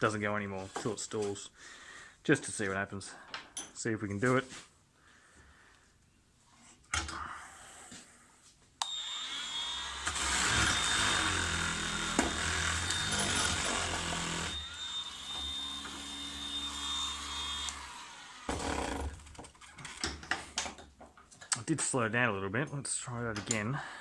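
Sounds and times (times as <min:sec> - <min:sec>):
orbital sander sanding wood: 0:08.9 - 0:19.1.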